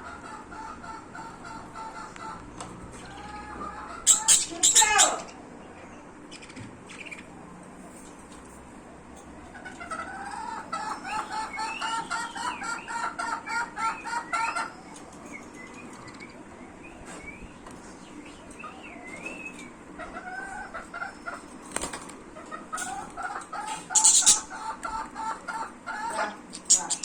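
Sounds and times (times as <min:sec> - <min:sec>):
budgies warbling: 0:00.0 - 0:07.4, 0:09.5 - 0:21.6, 0:22.3 - 0:27.0
budgies chirping: 0:00.1 - 0:07.4, 0:09.8 - 0:27.0.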